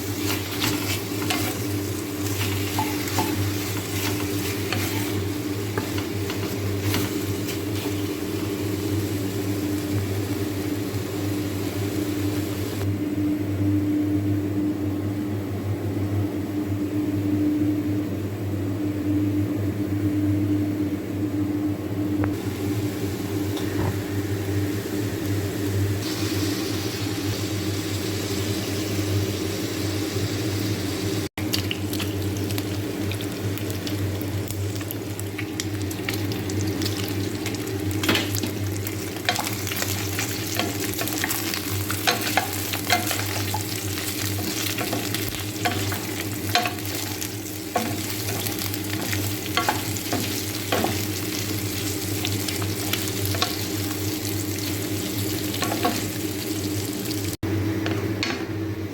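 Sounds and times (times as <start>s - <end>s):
utensil stirring in a pan: 0.0s - 10.0s, 35.3s - 57.1s
food sizzling in a pan: 0.0s - 12.9s, 22.4s - 57.4s.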